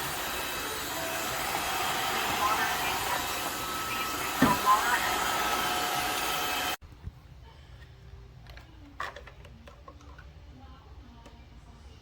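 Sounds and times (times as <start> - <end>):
cordless vacuum whirring: 0.0 - 6.8.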